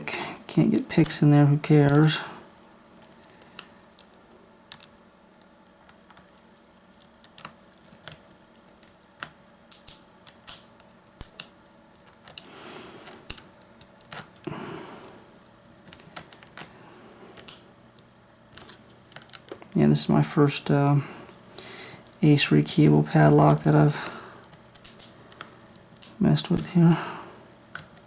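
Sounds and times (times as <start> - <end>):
metallic lock picking clicks: 24.4 - 25.4.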